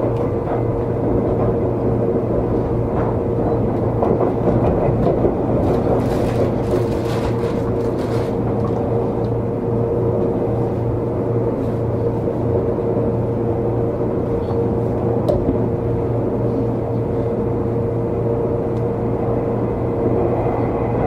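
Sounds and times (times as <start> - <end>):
rail clicks: 0.0 - 9.4
electric train rolling rumble: 0.0 - 21.0.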